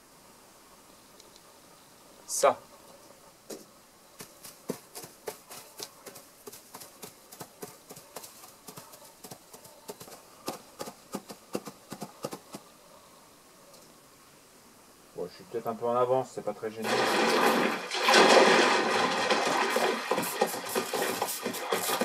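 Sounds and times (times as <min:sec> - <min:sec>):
foley hoofbeats: 0:04.2 - 0:12.7, 0:19.6 - 0:22.0.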